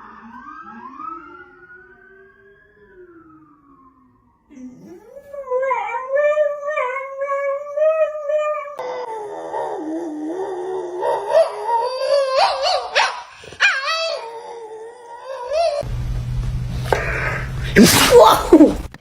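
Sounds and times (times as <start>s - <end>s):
dog howling: 4.5s - 15.8s
dog yipping: 12.1s - 14.3s.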